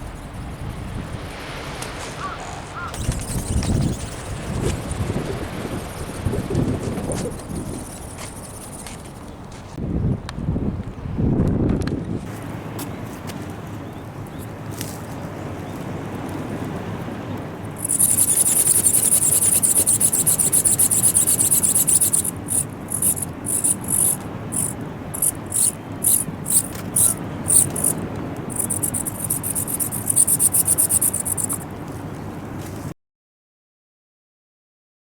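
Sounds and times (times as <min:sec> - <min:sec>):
high-pitched servo buzzing: 0:03.0 - 0:09.0, 0:17.8 - 0:31.6.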